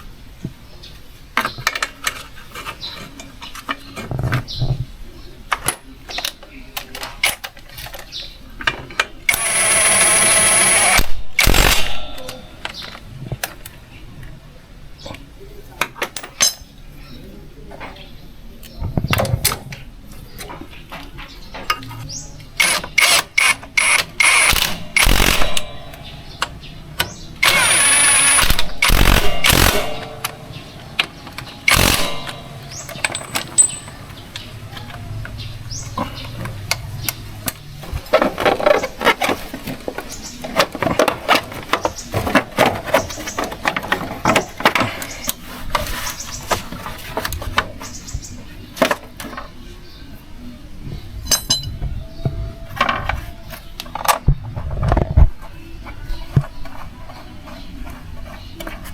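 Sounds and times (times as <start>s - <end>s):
tools clinking on metal parts: 5.5s - 13.7s, 15.8s - 16.9s, 21.5s - 37.6s, 51.2s - 51.8s
loud machine burst: 9.3s - 12.4s, 22.6s - 26.4s, 27.4s - 33.8s
rapid clicking: 22.6s - 37.4s.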